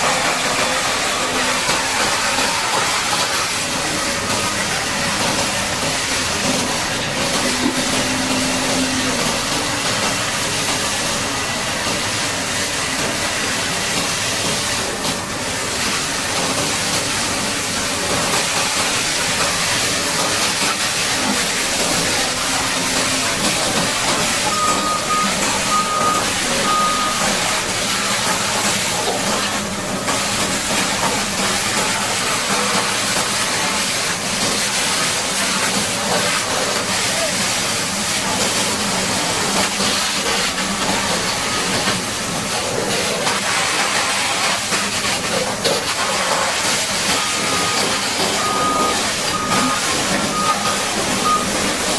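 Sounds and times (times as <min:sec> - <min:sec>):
water jet hissing: 0:00.0 - 0:51.9
short high beeps: 0:24.4 - 0:27.4, 0:47.2 - 0:51.6.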